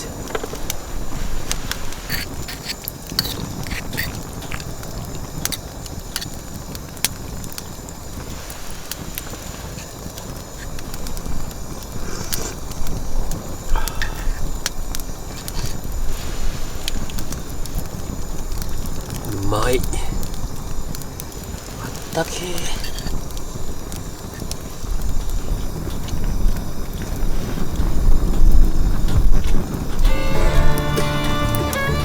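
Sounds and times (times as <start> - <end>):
wood fire crackling and popping: 0.0 - 32.0
wind rumble on microphone: 22.8 - 30.1.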